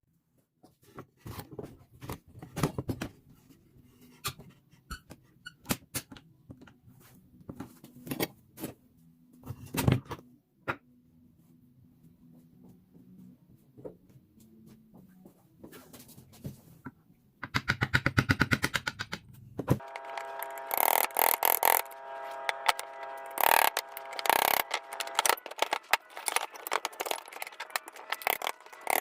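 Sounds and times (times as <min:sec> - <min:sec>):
hard objects clicking and knocking: 0:17.5 - 0:29.0.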